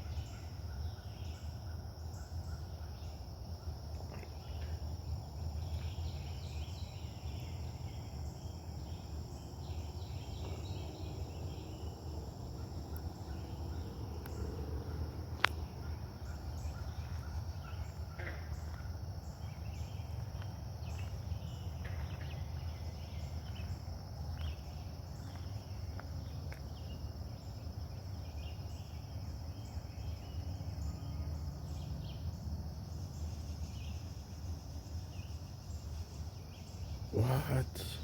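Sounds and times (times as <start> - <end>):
insect chirps: 0.0 - 38.0
faint short calls: 37.1 - 38.0.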